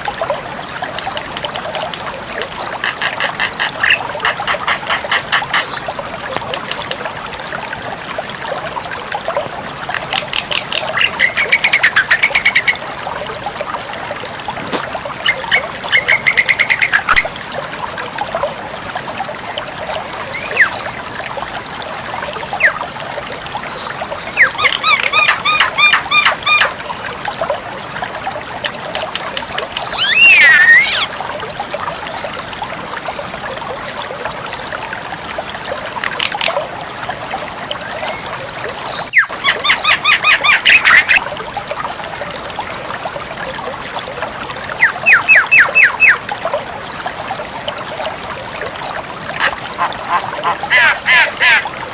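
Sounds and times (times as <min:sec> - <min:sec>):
bird calling harsh notes: 0:29.9 - 0:31.1.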